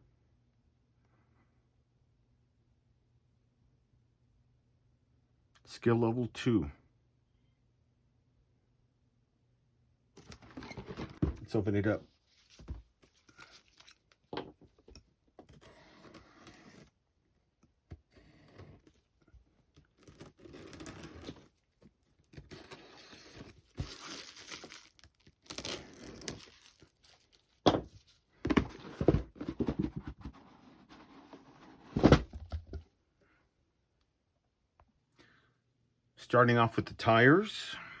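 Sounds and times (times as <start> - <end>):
cardboard box being opened: 10.2 - 11.5, 22.3 - 27.4, 28.5 - 32.8
plastic crinkling and tearing: 22.4 - 27.6.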